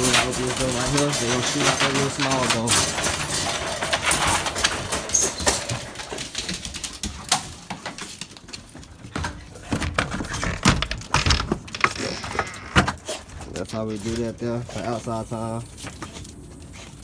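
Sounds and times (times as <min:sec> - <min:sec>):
kennel door knocking and clattering: 0:00.0 - 0:08.4, 0:09.0 - 0:11.9.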